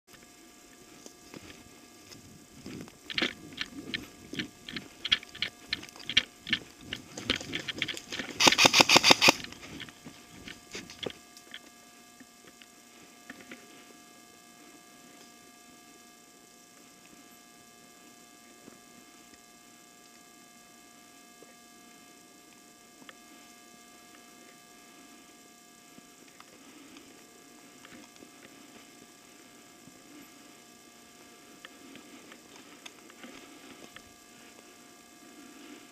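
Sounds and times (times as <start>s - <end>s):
faint steady hum: 0.1s - 35.9s
airsoft gun firing: 8.4s - 9.5s.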